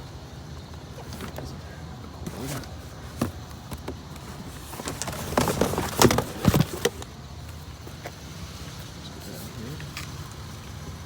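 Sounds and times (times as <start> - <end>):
objects knocking and clattering: 2.2 - 7.0.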